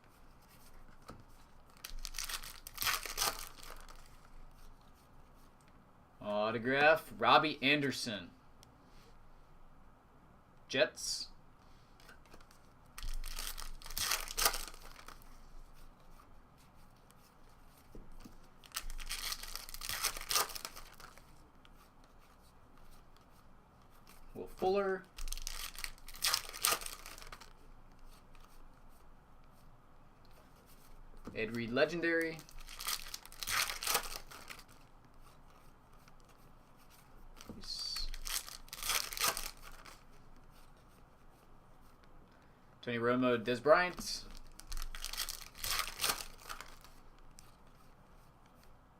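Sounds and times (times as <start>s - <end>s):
cards handled: 0.4s - 4.7s, 16.1s - 24.3s, 30.6s - 41.0s
wrapper tearing and crinkling: 1.7s - 4.2s, 12.4s - 15.2s, 18.6s - 21.2s, 25.2s - 27.5s, 32.4s - 34.8s, 38.0s - 40.0s, 44.3s - 47.5s.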